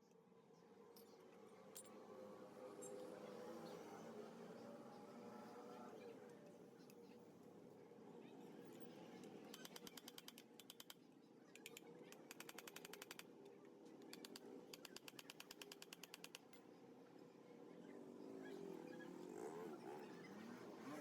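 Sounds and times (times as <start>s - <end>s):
rapid mechanical clicking: 11.6s - 13.3s.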